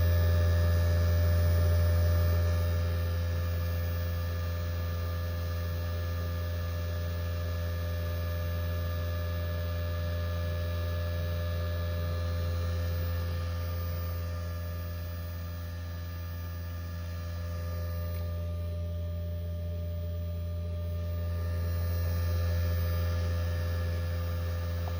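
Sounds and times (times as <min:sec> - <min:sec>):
electrical hum from equipment: 0:00.0 - 0:24.9.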